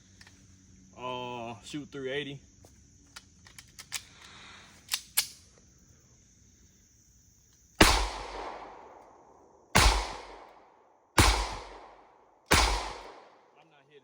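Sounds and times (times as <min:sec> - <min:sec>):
pistol shots with echo: 0:07.8 - 0:13.5.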